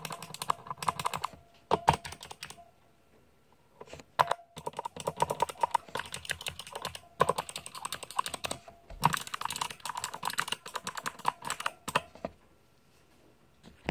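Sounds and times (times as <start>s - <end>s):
mechanical keyboard typing: 0.0s - 2.6s, 4.2s - 12.2s.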